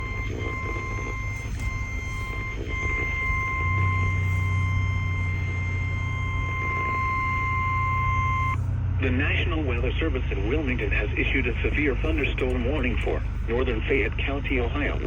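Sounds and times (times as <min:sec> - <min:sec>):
steady warning alert tone: 0:00.0 - 0:08.6
low hum: 0:00.0 - 0:15.0.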